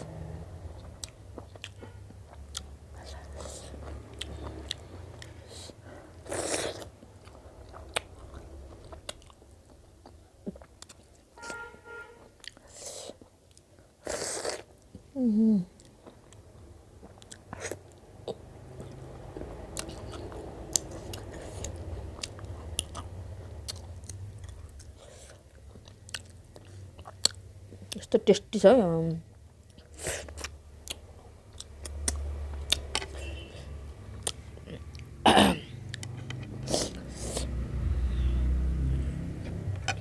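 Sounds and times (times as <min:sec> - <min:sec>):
person chewing and crunching: 0:00.7 - 0:11.3, 0:12.3 - 0:15.0, 0:15.8 - 0:28.0, 0:29.6 - 0:35.2.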